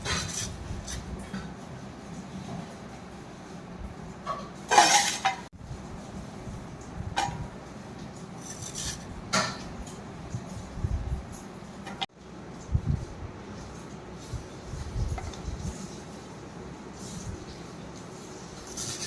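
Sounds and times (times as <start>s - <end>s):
dishes and utensils clattering: 4.2s - 5.5s, 8.4s - 10.6s.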